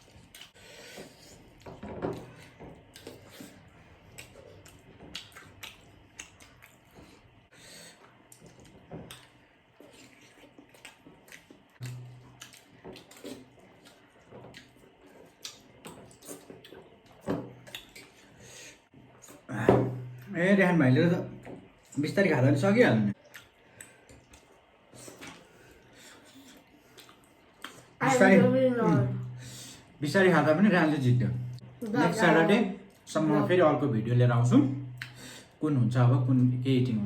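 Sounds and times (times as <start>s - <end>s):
chewing and mouth noises: 0.0s - 18.4s, 23.2s - 28.0s, 34.9s - 35.3s.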